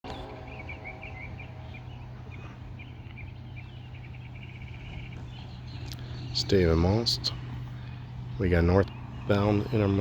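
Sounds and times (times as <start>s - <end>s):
steady low drone: 0.0s - 10.0s
small birds chirping: 0.1s - 10.0s.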